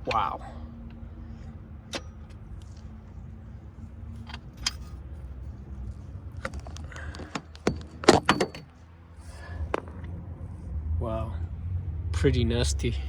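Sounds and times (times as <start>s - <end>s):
metal clanks and knocks: 6.4s - 8.8s.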